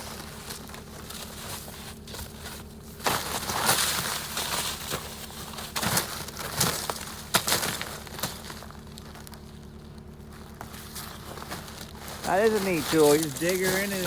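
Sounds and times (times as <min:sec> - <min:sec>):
crusted snow crunching: 0:00.0 - 0:14.0
steady low hum: 0:00.0 - 0:14.0.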